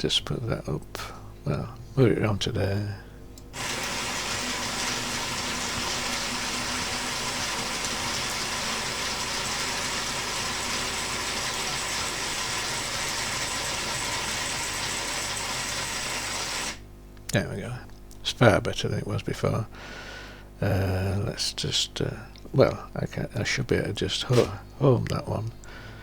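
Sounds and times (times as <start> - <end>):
robot arm motor whirring: 11.3 - 16.8.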